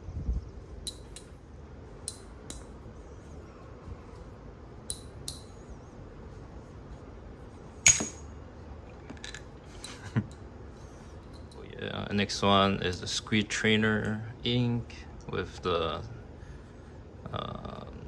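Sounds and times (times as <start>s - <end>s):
metal thumb chucks clinking: 7.8s - 8.3s.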